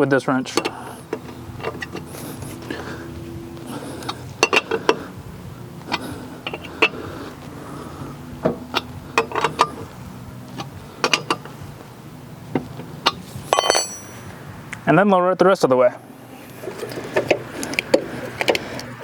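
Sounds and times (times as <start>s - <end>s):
low hum: 0.6s - 14.8s
wrench knocking on lug nuts: 10.6s - 11.6s
metallic ring: 13.0s - 14.4s.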